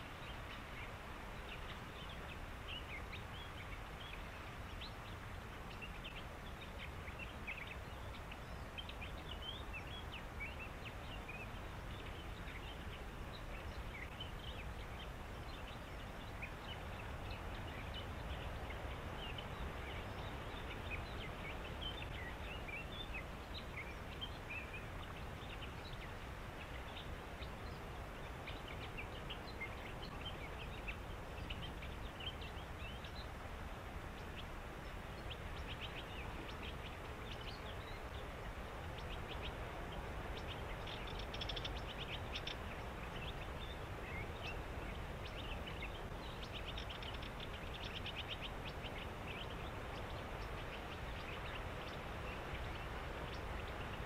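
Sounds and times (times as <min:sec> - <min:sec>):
low rumble and hiss: 0:00.0 - 0:54.0.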